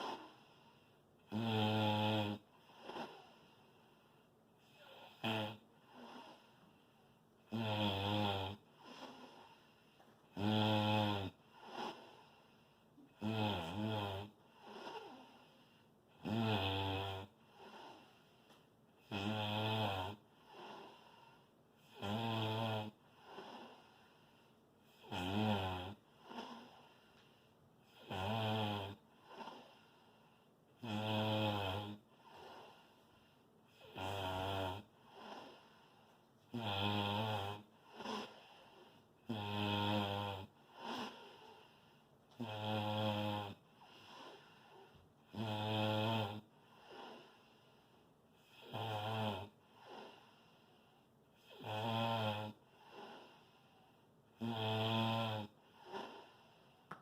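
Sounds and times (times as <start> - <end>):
person snoring loudly: 1.3 - 3.4, 4.7 - 6.5, 7.5 - 9.6, 10.3 - 12.3, 13.2 - 15.5, 16.2 - 18.2, 19.0 - 21.1, 21.8 - 24.0, 24.9 - 26.8, 27.9 - 29.8, 30.8 - 32.8, 33.7 - 35.7, 36.5 - 38.5, 39.2 - 41.5, 42.3 - 47.4, 48.4 - 50.3, 51.4 - 53.4, 54.4 - 56.4.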